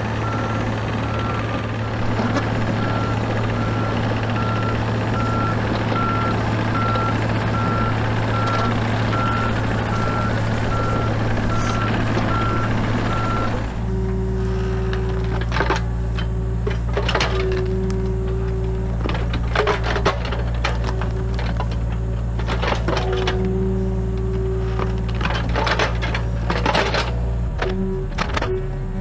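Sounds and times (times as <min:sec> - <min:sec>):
excavator engine running: 0:00.0 - 0:29.0
travel alarm beeping: 0:00.2 - 0:14.1.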